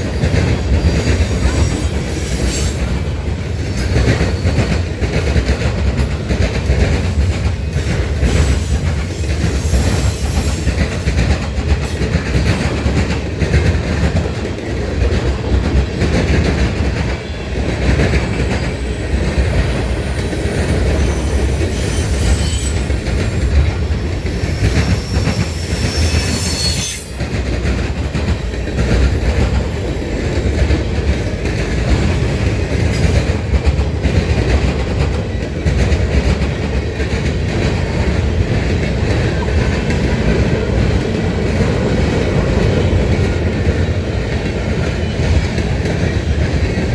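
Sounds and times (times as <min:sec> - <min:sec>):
train wheels rumbling on rails: 0:00.0 - 0:46.9
high wheel squeal: 0:08.2 - 0:10.9, 0:18.5 - 0:27.3.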